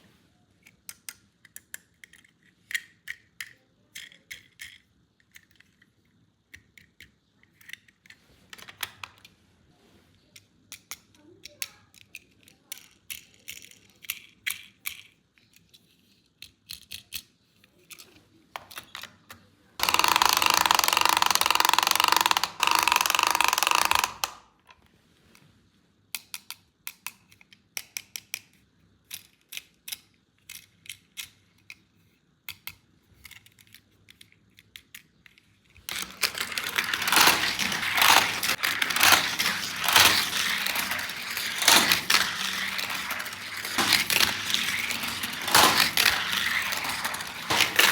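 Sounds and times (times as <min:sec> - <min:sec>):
plastic parts clicking: 0:00.6 - 0:09.3, 0:10.4 - 0:19.2, 0:19.8 - 0:24.8, 0:32.5 - 0:47.9
packaging crackling: 0:35.9 - 0:47.9.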